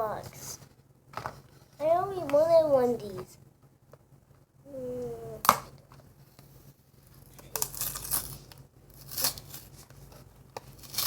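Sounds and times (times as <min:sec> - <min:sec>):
packaging ripping and crinkling: 0:07.5 - 0:09.8, 0:10.8 - 0:11.0.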